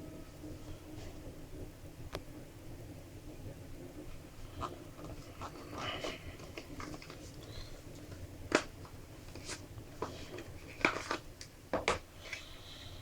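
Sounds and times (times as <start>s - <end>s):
box and packaging clicks and taps: 8.5s - 12.1s.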